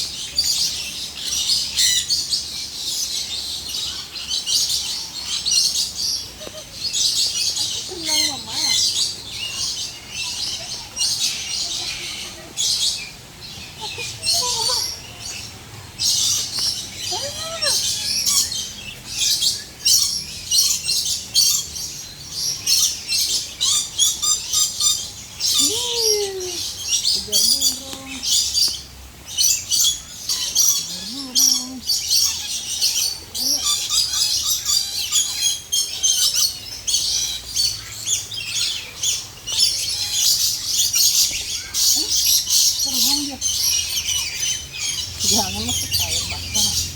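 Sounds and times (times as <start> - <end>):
small birds chirping: 0.0 - 46.9.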